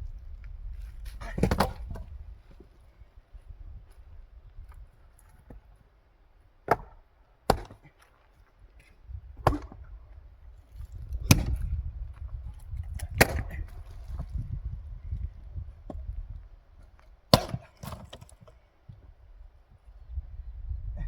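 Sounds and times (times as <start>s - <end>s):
axe splitting logs: 1.2s - 2.0s, 6.6s - 8.2s, 9.3s - 10.0s, 11.0s - 11.7s, 12.9s - 14.3s, 16.8s - 18.6s.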